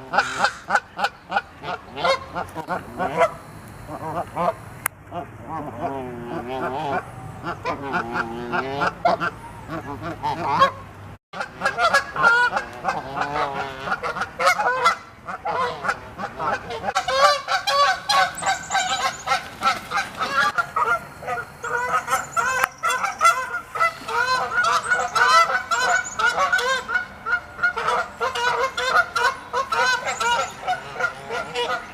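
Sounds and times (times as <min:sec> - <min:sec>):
geese honking: 0:00.0 - 0:10.8, 0:11.4 - 0:31.9.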